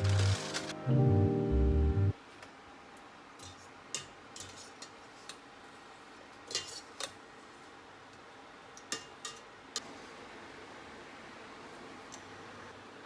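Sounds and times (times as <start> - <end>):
utensils and dishware clinking: 0.0 - 0.8.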